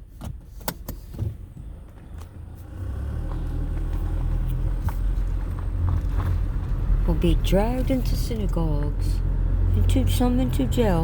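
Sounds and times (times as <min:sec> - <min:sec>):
car engine and road noise: 0:00.0 - 0:11.0.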